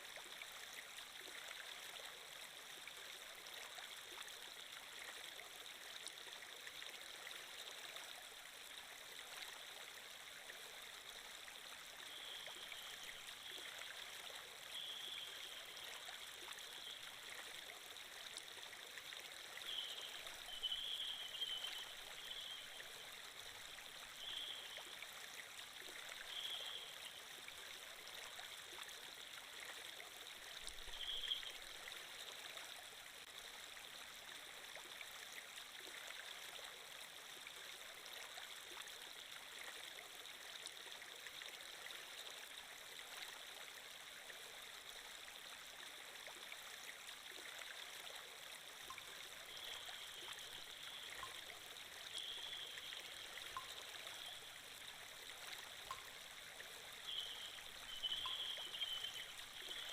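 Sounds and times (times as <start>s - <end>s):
running water: 0.0s - 59.9s.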